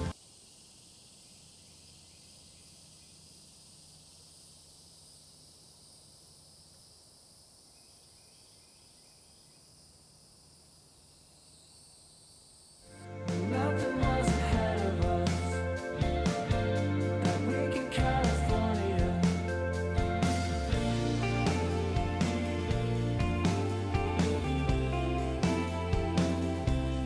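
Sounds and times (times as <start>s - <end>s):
high-pitched insect chorus: 0.1s - 12.9s.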